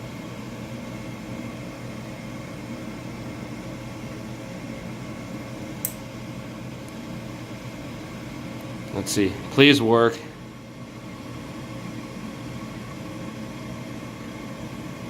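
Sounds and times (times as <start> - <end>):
gas furnace humming and hissing: 0.0 - 15.0
sharp furnace click: 5.8 - 6.1.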